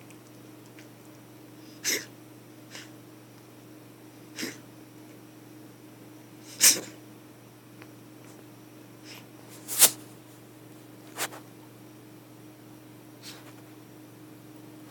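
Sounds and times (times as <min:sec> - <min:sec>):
pet wheezing in sneeze-like bursts: 0:01.6 - 0:02.1, 0:02.7 - 0:03.0, 0:04.3 - 0:04.6, 0:06.4 - 0:07.0.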